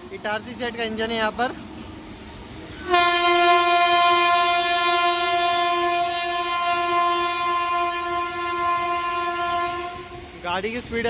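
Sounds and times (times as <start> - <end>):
locomotive air horn blast: 2.8 - 10.4.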